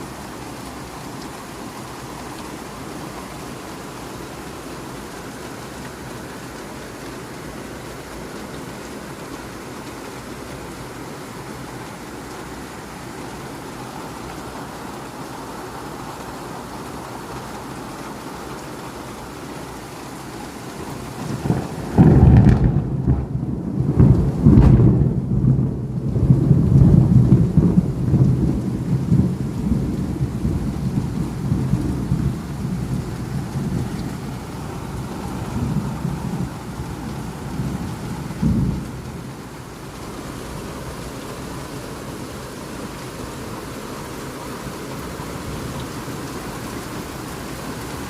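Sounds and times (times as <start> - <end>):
steady rain falling: 0.0 - 48.0
thunder rumbling: 20.8 - 41.5.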